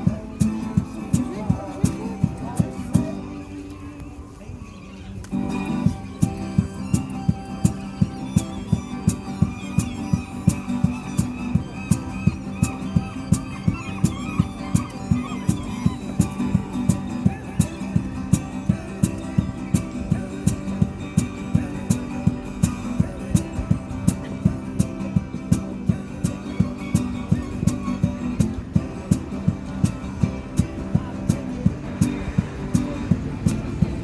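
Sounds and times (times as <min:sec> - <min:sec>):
quick drum beat: 0:00.0 - 0:03.2, 0:05.8 - 0:34.0
upbeat music with plucked guitar: 0:00.0 - 0:34.0.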